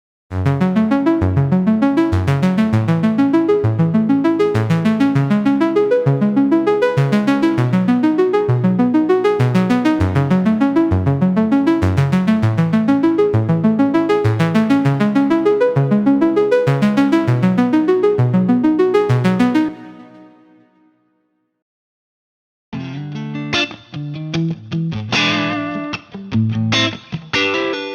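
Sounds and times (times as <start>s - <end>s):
synthesizer arpeggio: 0.3s - 20.8s.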